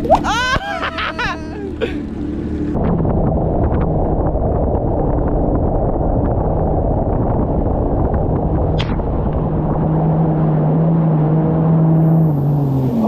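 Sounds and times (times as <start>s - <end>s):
jet ski engine running: 0.0s - 9.9s
wind rumble on microphone: 2.7s - 13.0s.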